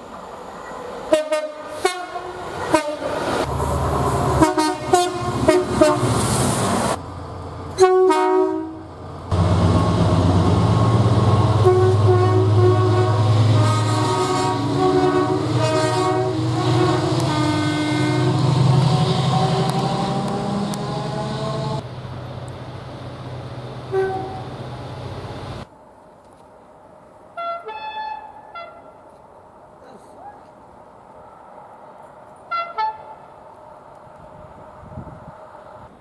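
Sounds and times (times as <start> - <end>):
locomotive air horn blasts: 1.1 - 3.1, 4.3 - 6.3, 7.8 - 8.8, 11.5 - 21.8, 23.9 - 24.5, 27.4 - 29.0, 32.5 - 33.2
locomotive engine running: 2.2 - 25.7.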